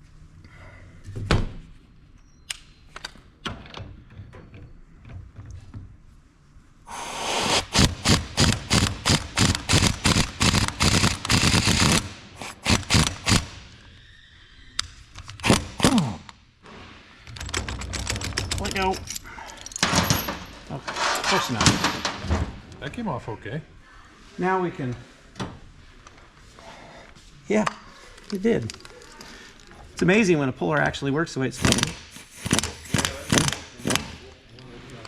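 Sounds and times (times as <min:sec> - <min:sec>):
rapid mechanical hammering: 0:07.5 - 0:13.6, 0:31.6 - 0:34.2
metal clicks and clanks: 0:17.2 - 0:22.4.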